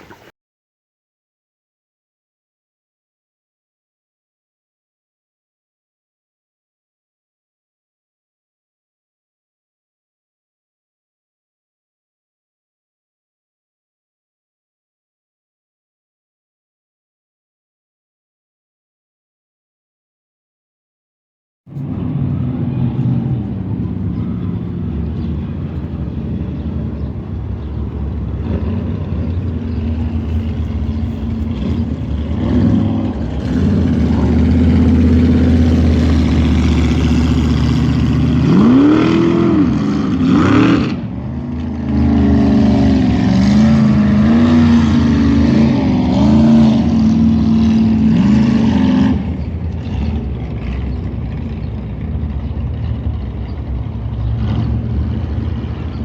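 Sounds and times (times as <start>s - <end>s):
jet boat engines revving: 21.7s - 56.0s.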